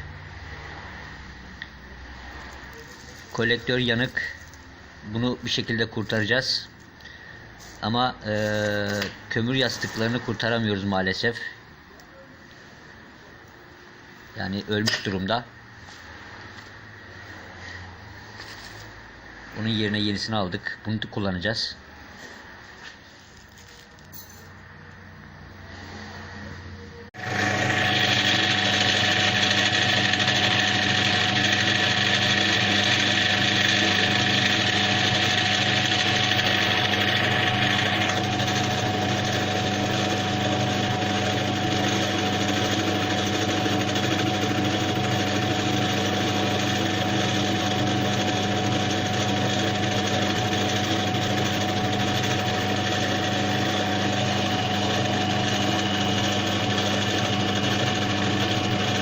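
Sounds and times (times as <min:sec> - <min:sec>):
small electric machine humming: 0:25.9 - 0:59.0.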